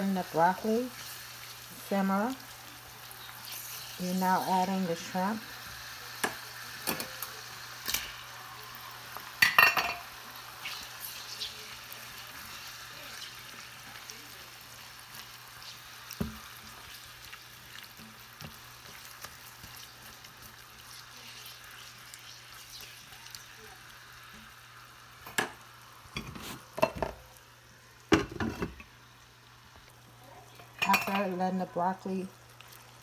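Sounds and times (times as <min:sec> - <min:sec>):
food sizzling in a frying pan: 0:00.0 - 0:33.0
pan and utensil clatter: 0:09.4 - 0:11.4, 0:30.5 - 0:31.4.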